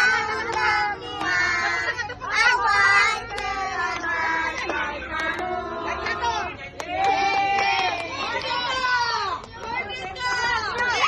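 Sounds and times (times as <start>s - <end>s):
group singing together: 0.0s - 8.2s
people talking: 0.0s - 11.0s.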